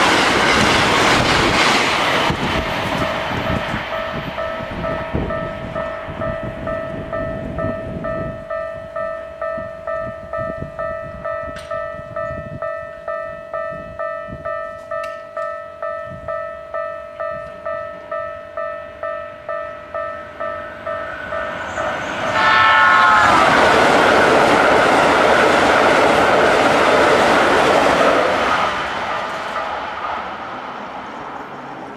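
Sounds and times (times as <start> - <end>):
train wheel and rail noise: 0.0 - 31.9
level crossing warning bell: 2.4 - 26.0, 29.0 - 30.0
train horn blast: 21.6 - 24.3.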